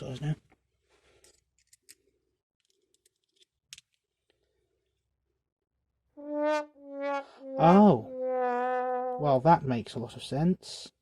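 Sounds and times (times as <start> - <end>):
brass-like horn note: 6.2 - 9.3.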